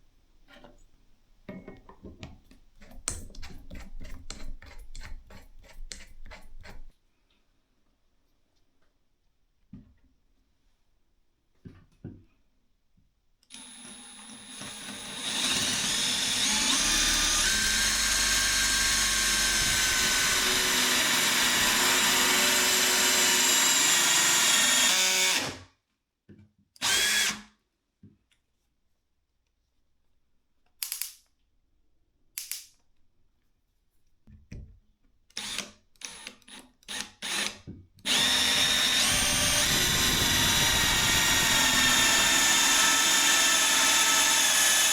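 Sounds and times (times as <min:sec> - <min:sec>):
cordless drill whining: 0:13.5 - 0:25.6, 0:26.8 - 0:27.5, 0:35.4 - 0:44.9.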